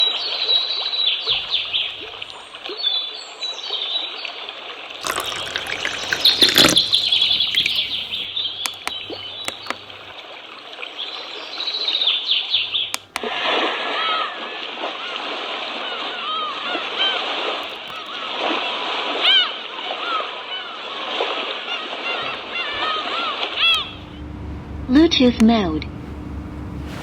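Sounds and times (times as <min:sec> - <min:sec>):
running water: 0:05.0 - 0:10.1, 0:12.6 - 0:13.6.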